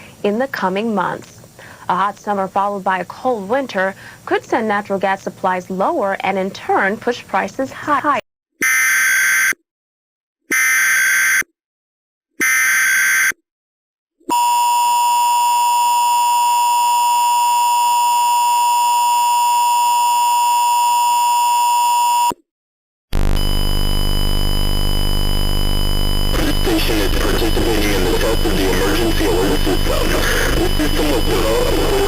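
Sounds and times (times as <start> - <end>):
harsh buzzing tone: 23.1 - 32.0
screeching data bursts: 23.2 - 32.0
two-tone attention signal: 23.2 - 32.0.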